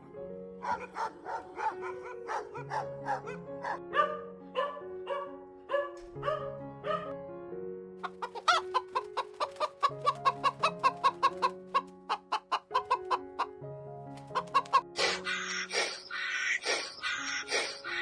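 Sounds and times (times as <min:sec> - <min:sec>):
background music: 0:00.0 - 0:18.0
chicken clucking: 0:00.6 - 0:03.8, 0:08.0 - 0:13.6, 0:14.2 - 0:15.7.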